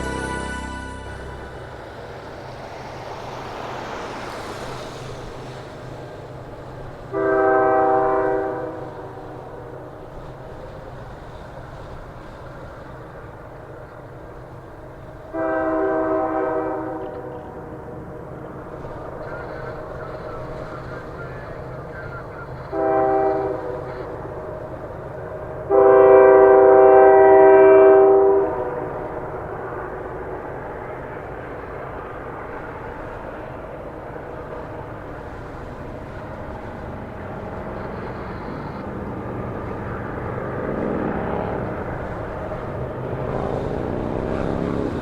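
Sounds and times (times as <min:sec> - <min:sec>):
locomotive air horn: 0:00.0 - 0:02.0, 0:07.1 - 0:09.4, 0:15.3 - 0:17.7, 0:22.6 - 0:24.2, 0:25.7 - 0:29.1, 0:43.3 - 0:44.7
train rumbling: 0:00.0 - 0:45.0.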